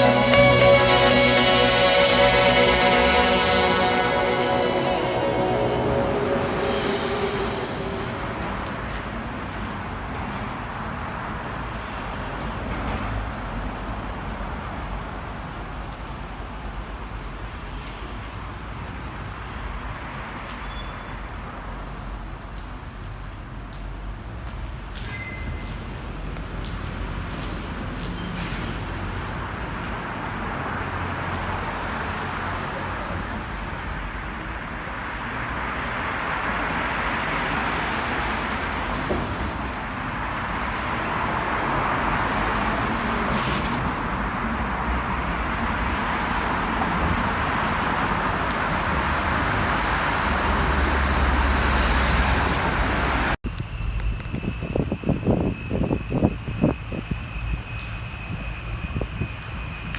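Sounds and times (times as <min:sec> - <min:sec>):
passing vehicles rushing: 0:00.0 - 0:14.6, 0:27.0 - 0:53.4.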